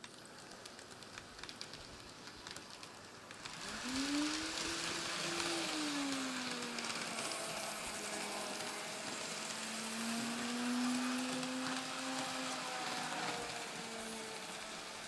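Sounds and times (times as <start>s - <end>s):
hiss: 0.0s - 15.0s
small electric motor whine: 3.4s - 15.0s.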